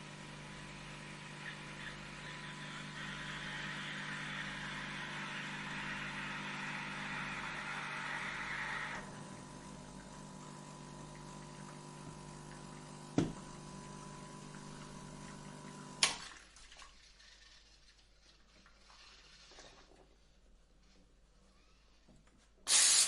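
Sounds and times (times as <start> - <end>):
motor humming: 0.2 - 16.0
coffee grinder grinding: 0.4 - 15.9.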